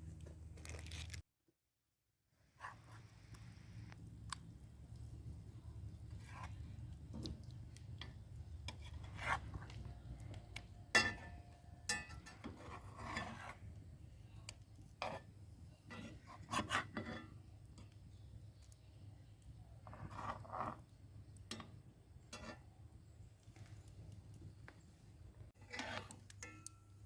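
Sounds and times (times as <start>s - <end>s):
objects scraping and clinking: 25.6s - 26.8s.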